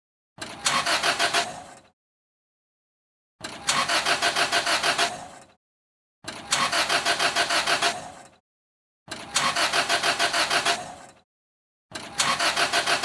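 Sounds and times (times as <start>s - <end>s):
car engine cranking: 0.4s - 1.8s, 3.4s - 5.5s, 6.3s - 8.3s, 9.1s - 11.2s, 11.9s - 13.0s.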